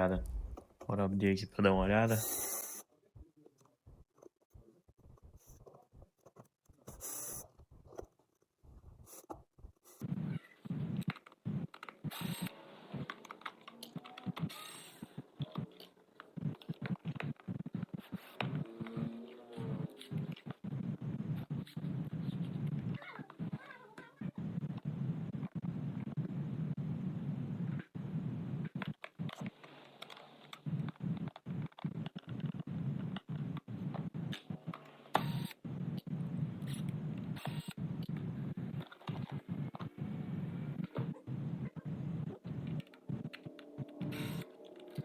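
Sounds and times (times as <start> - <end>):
low hum: 0.0 - 0.7.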